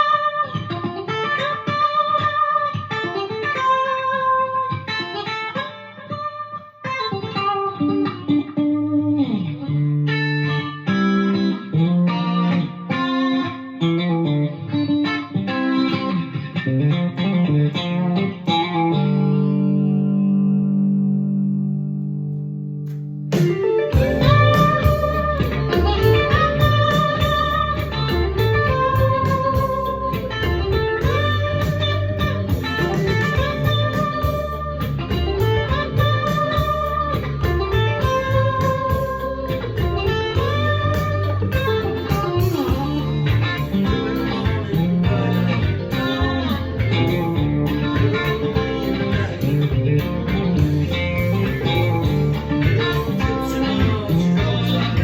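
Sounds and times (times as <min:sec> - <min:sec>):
electric guitar blues phrase: 0:00.0 - 0:55.0
low bass: 0:23.9 - 0:55.0.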